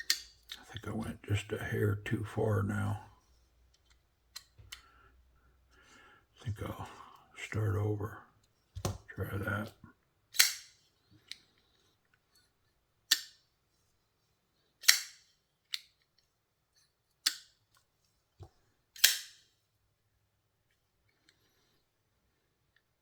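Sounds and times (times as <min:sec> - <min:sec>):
folding knife snapping open and shut: 0:10.3 - 0:10.7, 0:13.1 - 0:13.4, 0:14.8 - 0:15.9, 0:17.2 - 0:17.5, 0:19.0 - 0:19.4.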